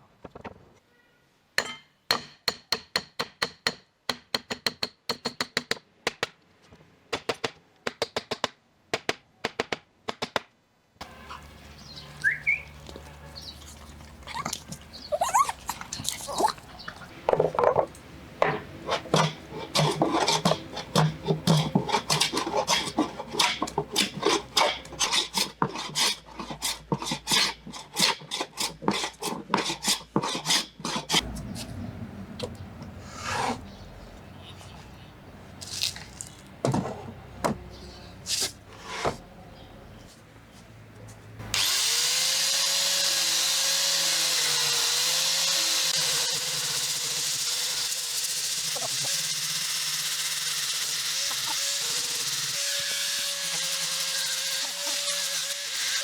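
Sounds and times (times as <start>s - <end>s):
steady workshop background: 0.0s - 56.0s
sharp knocks and taps on wood: 7.1s - 10.5s
scraping on wood: 11.0s - 31.8s, 32.4s - 34.8s, 38.3s - 39.3s.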